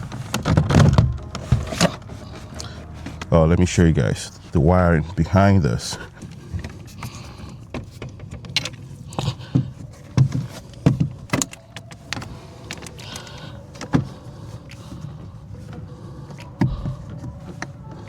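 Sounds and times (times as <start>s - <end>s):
plastic car door trim clicking: 10.2s - 14.1s.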